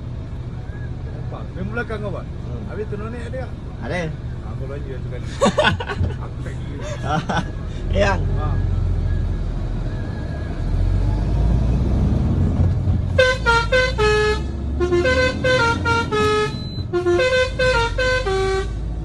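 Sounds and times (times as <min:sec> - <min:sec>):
engine rumble: 0:00.0 - 0:19.0
musical horn tune: 0:13.1 - 0:18.8.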